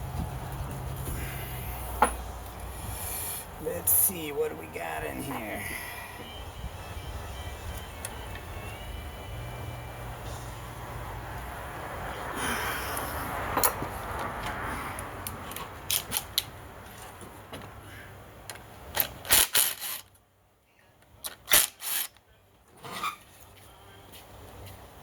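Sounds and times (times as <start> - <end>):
hand tools and metal parts clattering: 13.5 - 14.6, 15.4 - 17.8.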